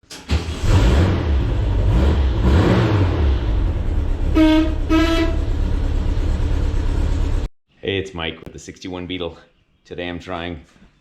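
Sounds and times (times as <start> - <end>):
car engine rumbling: 0.4 - 7.5
car horn beeps: 4.3 - 5.6.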